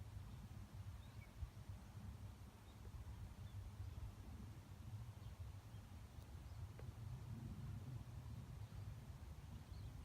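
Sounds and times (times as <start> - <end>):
faint high bird chirp: 0.3 - 1.6
steady low rumble: 6.3 - 10.0.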